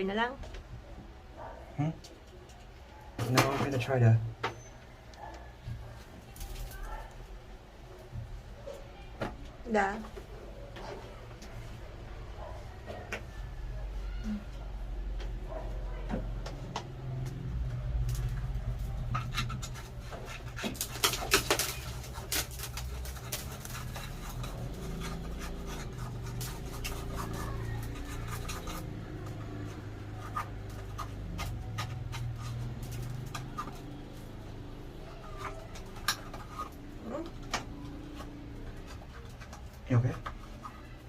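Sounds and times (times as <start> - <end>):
scratching and scraping debris: 5.8 - 7.4, 16.4 - 41.0.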